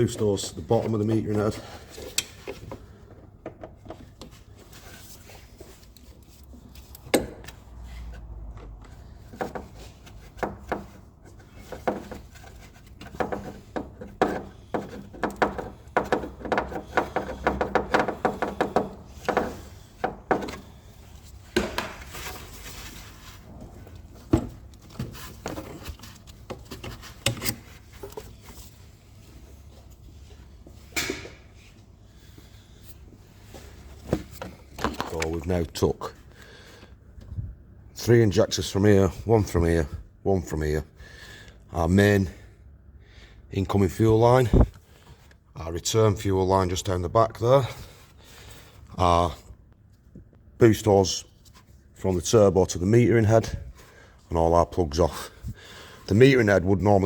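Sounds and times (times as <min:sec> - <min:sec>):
hand tools clicking and knocking: 0:11.6 - 0:20.8.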